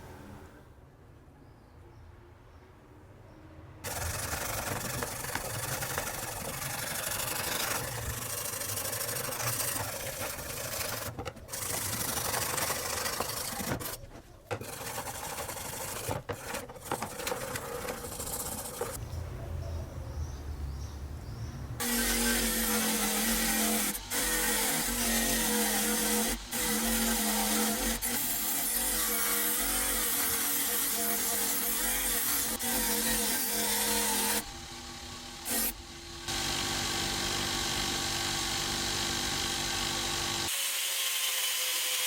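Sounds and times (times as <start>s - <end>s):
abrasive scraping on metal blade: 3.9s - 19.0s.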